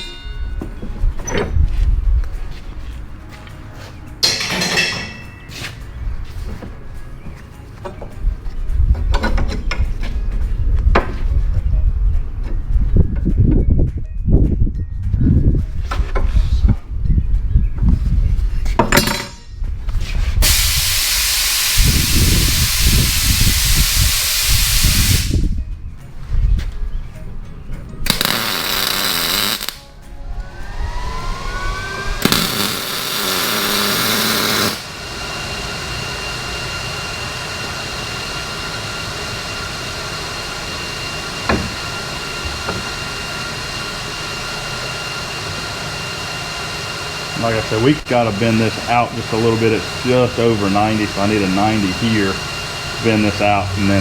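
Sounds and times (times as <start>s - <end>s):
loud hissing bursts: 20.4s - 25.5s, 28.1s - 29.8s, 30.8s - 45.6s, 46.8s - 54.0s
rising machine whine: 28.0s - 54.0s
steady machine hum: 28.0s - 54.0s.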